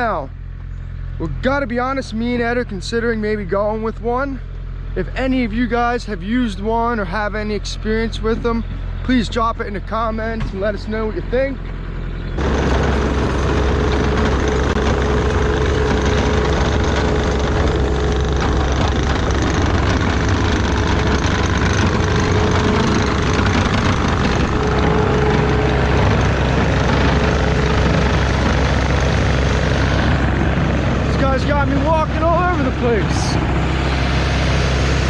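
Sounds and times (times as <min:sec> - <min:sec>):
diesel engine running: 0:00.0 - 0:35.0
faint steady whine: 0:12.1 - 0:35.0.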